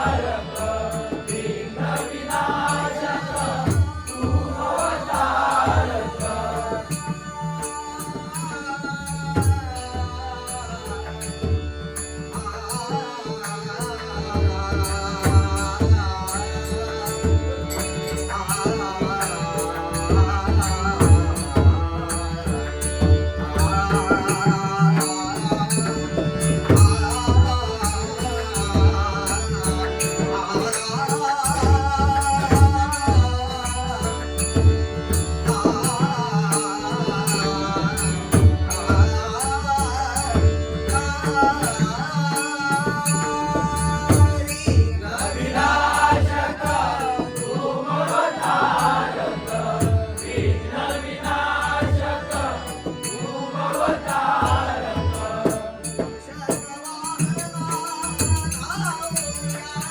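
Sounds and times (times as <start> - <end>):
group of voices singing: 0.0 - 7.2, 23.4 - 56.6
man singing: 0.0 - 11.2, 12.4 - 34.7, 35.4 - 59.9
hand drum: 25.5 - 27.6.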